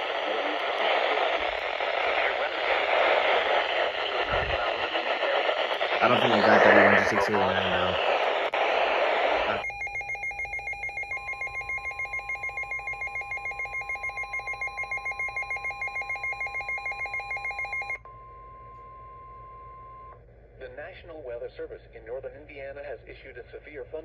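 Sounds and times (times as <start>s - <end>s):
radio hiss: 0.0s - 9.6s
steady warning alarm tone: 9.6s - 18.0s.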